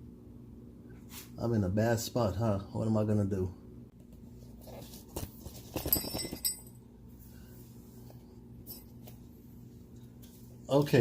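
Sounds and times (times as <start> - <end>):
low steady hum: 0.0 - 11.0
metallic clinks ringing: 5.8 - 6.8.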